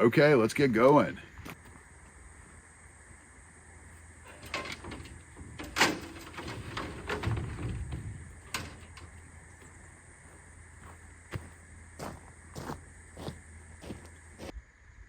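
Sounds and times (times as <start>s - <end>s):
knocks and clatters: 4.2s - 9.8s.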